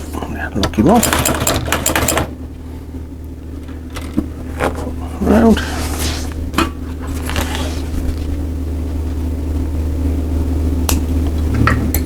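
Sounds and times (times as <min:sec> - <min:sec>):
sewing machine stitching: 0:01.0 - 0:02.3.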